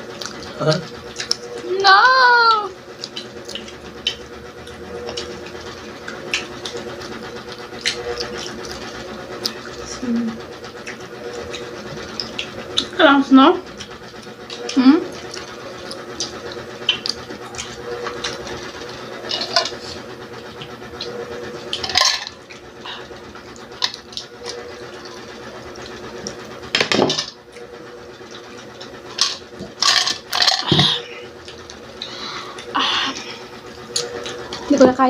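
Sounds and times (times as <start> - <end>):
steady low hum: 0.0 - 35.0
crunching while eating: 2.9 - 9.8.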